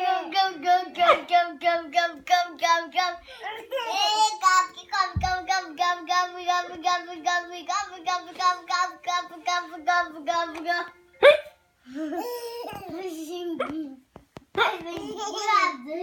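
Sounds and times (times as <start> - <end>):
baby laughing: 3.4 - 4.4, 12.0 - 14.0, 14.6 - 15.9.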